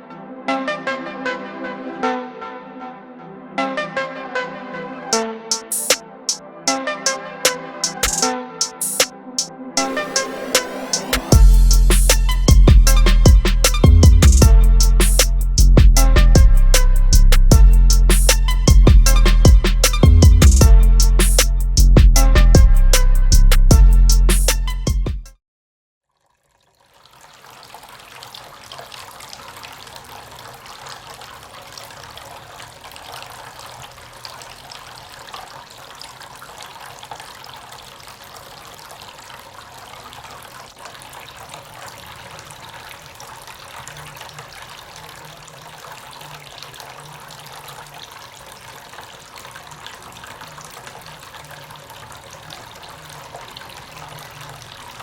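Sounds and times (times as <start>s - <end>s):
water trickling in a fountain: 26.0s - 55.0s.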